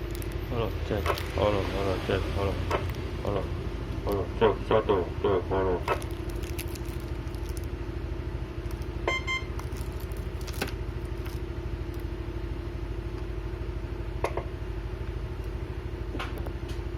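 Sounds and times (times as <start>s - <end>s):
vehicle engine idling: 0.0s - 16.9s
short electronic beep: 9.1s - 9.5s.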